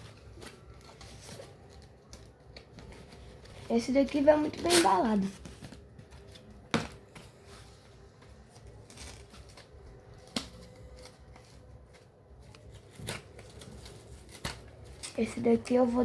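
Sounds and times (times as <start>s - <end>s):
plastic wrapping rustling: 0.0s - 16.0s.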